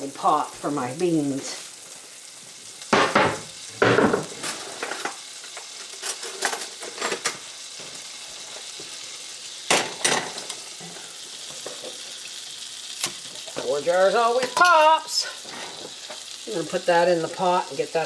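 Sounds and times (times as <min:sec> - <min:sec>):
butter sizzling in a frying pan: 0:00.0 - 0:18.0
kitchenware knocking and clanking: 0:03.0 - 0:05.2, 0:09.7 - 0:10.4.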